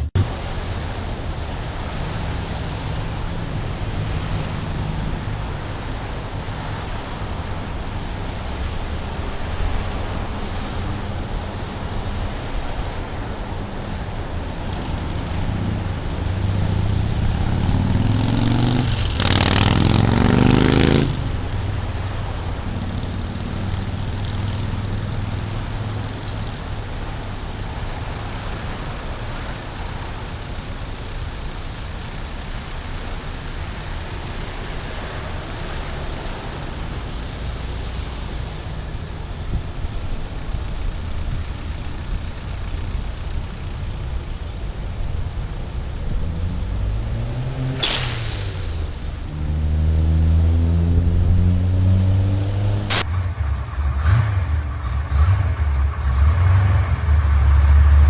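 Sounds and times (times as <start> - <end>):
drag car engine revving: 0.0 - 0.3, 15.0 - 26.2, 46.2 - 58.0.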